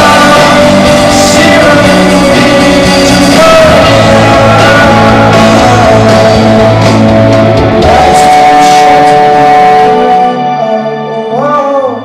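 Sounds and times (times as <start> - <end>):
live rock band playing: 0.0 - 12.0.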